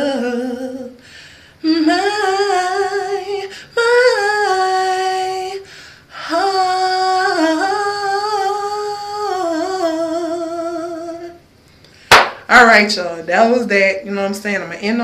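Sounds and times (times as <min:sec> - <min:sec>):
person singing unaccompanied: 0:00.0 - 0:01.0, 0:01.6 - 0:05.6, 0:06.2 - 0:11.4.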